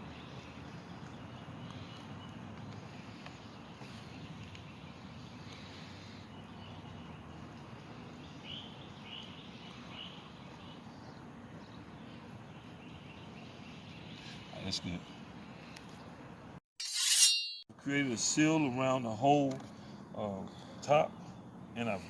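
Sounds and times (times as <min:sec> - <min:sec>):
bird chirps: 0:00.0 - 0:15.7
outdoor background noise: 0:00.0 - 0:22.0.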